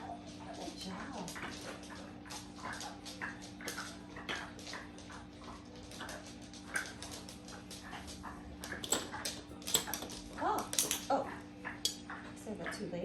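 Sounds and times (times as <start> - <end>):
small clicks and mouth noises: 0.3 - 12.3.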